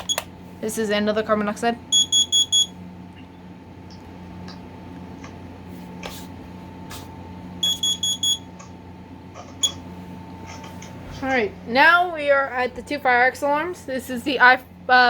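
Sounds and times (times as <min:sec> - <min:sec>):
high alarm beeps: 0:01.9 - 0:02.8, 0:07.6 - 0:08.5.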